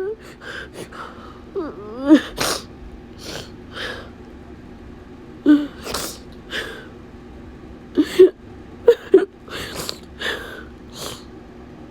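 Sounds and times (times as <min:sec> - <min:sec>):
sniffling breaths: 0:00.0 - 0:04.2, 0:05.5 - 0:06.9, 0:09.5 - 0:11.3
man crying and sobbing: 0:08.0 - 0:10.6.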